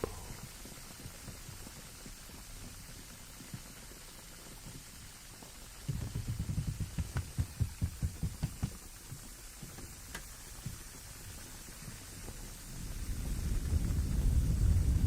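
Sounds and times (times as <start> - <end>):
fingertip tapping on microphone: 5.9 - 8.8.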